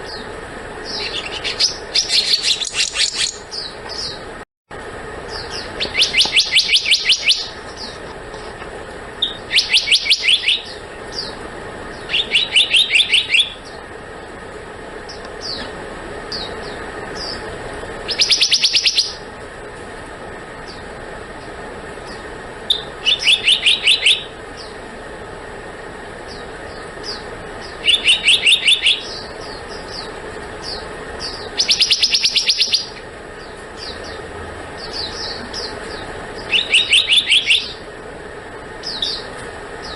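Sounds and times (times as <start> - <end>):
steady low hum: 0.0 - 39.9
bird calling high notes: 0.8 - 4.2, 5.3 - 8.0, 9.2 - 13.8, 16.3 - 19.3, 22.1 - 24.8, 26.3 - 37.9
single bird chirps: 5.3 - 8.0.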